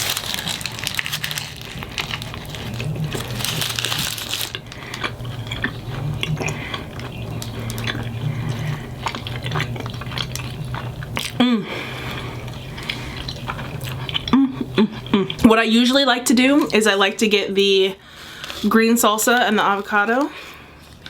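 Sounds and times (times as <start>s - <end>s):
plastic crinkling and crackling: 0.0s - 11.4s
steady low hum: 0.0s - 21.0s.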